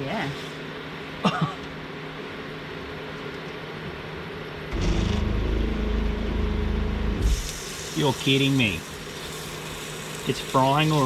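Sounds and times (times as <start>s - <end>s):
induction cooktop hum and fan: 0.0s - 11.0s
loud low hum: 4.7s - 7.7s.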